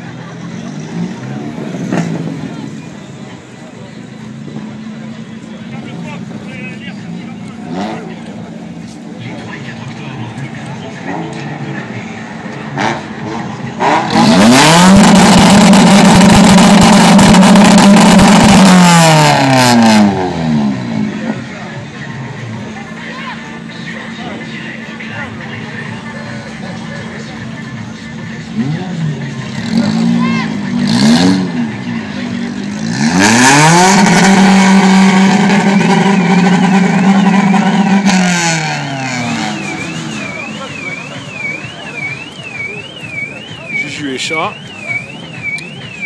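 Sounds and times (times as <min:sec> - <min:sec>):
car engine revving: 0:00.0 - 0:46.0
high warbling tone: 0:33.3 - 0:46.0.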